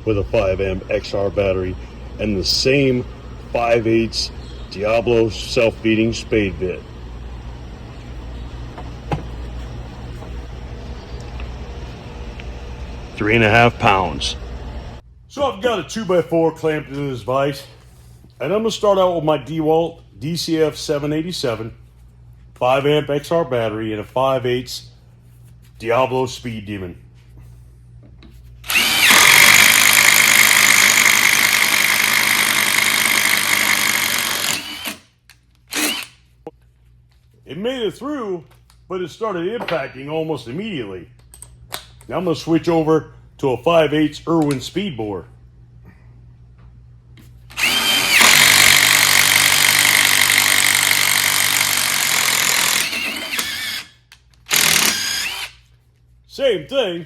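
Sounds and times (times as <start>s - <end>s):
impact driver boring through wood: 28.6s - 35.1s, 35.7s - 36.2s, 47.5s - 53.9s, 54.5s - 55.6s.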